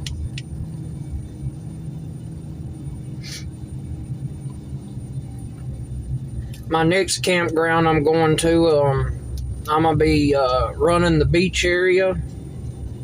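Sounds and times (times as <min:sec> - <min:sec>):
engine and road rumble: 0:00.0 - 0:13.0
faint low hum: 0:00.0 - 0:13.0
brief hiss: 0:03.2 - 0:03.5.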